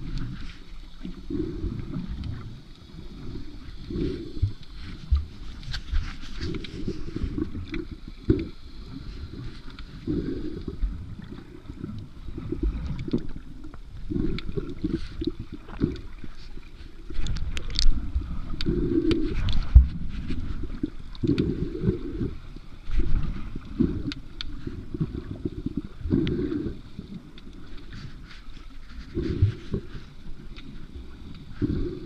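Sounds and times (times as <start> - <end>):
muffled water sloshing and gurgling: 0.0 - 32.0
faint clicks: 12.8 - 21.6, 22.4 - 24.7, 25.6 - 31.8.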